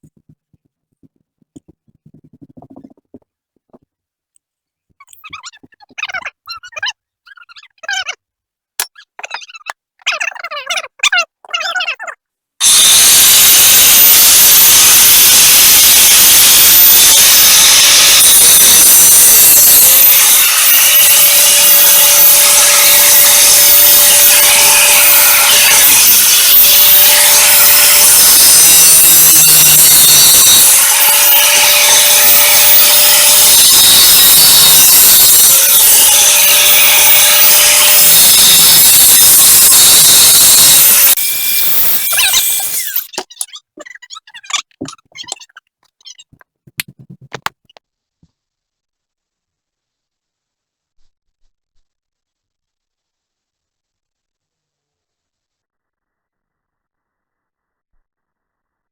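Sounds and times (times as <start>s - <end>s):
angle grinder grinding: 8.8s - 9.8s, 12.6s - 47.8s.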